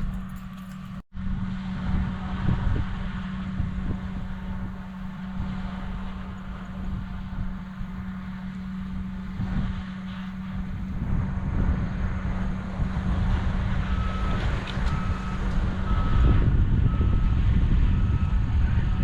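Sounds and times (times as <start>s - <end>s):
vehicle backup alarm beeping: 0.0s - 1.0s, 13.8s - 18.7s
engine rumbling: 0.0s - 19.0s.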